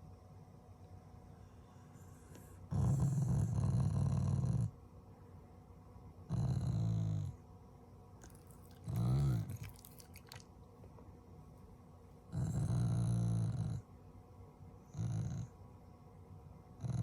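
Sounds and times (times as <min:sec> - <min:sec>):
dog growling: 0:02.7 - 0:04.8, 0:06.3 - 0:07.4, 0:08.2 - 0:10.4, 0:12.3 - 0:13.9, 0:14.9 - 0:15.6, 0:16.8 - 0:17.0.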